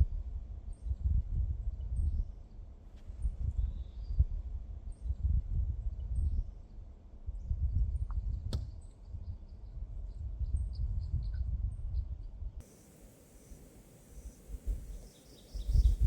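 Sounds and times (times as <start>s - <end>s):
gusty wind on microphone: 0.0s - 2.3s, 3.2s - 6.5s, 7.3s - 16.0s
faint high chirps: 12.6s - 16.0s.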